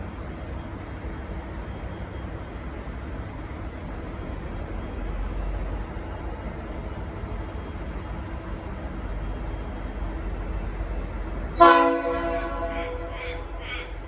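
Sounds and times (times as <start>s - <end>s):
locomotive air horn blast: 11.6s - 14.0s.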